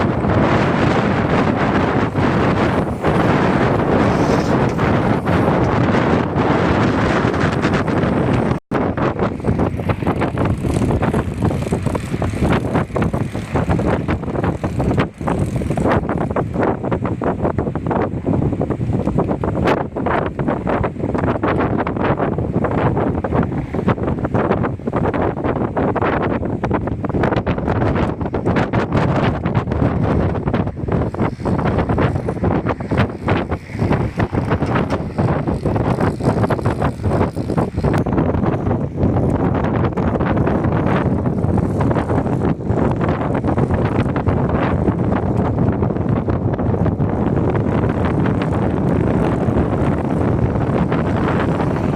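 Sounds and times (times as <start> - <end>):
wind buffeting microphone: 0.0 - 51.9.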